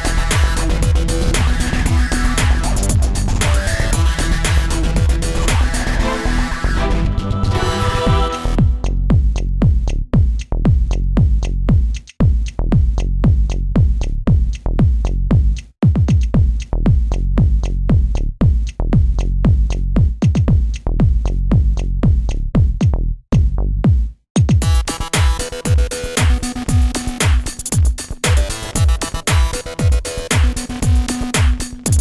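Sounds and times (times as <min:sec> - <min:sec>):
electronic music with heavy bass: 0:00.0 - 0:11.6, 0:24.6 - 0:32.0.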